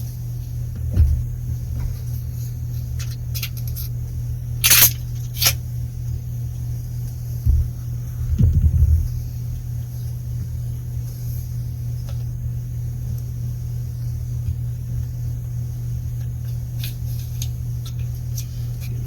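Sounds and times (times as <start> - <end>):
steady low hum: 0.0 - 19.0
low knocks: 8.3 - 9.1.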